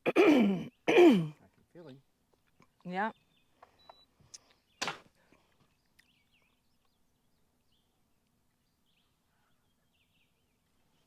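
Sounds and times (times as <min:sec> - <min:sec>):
faint bird chirps: 0:03.0 - 0:11.0.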